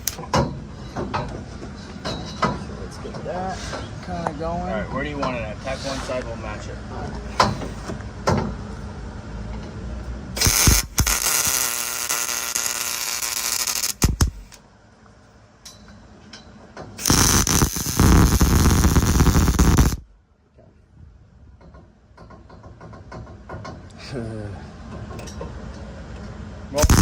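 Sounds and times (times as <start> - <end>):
arc welder crackling: 0.0 - 0.2, 10.4 - 14.6, 17.0 - 20.1, 26.8 - 27.0.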